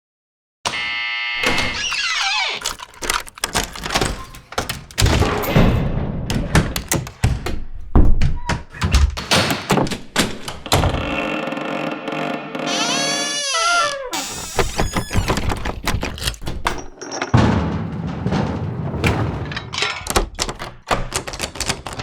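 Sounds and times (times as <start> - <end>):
door thunks and slams: 1.4 - 11.3, 12.7 - 22.0
door creaking: 1.4 - 22.0
music: 11.0 - 14.2.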